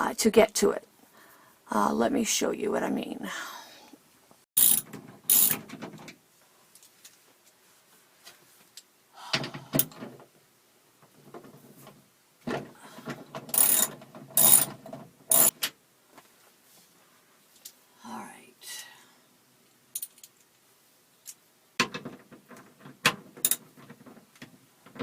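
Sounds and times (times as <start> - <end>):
socket ratchet clicking: 4.6 - 5.6, 13.5 - 14.7, 15.3 - 15.5.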